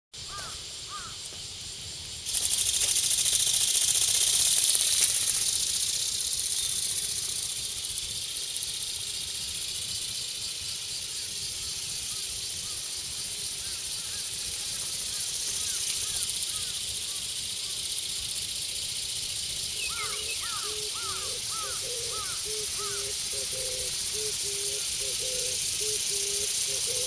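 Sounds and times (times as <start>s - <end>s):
electric motor high hissing buzz: 2.3s - 8.8s.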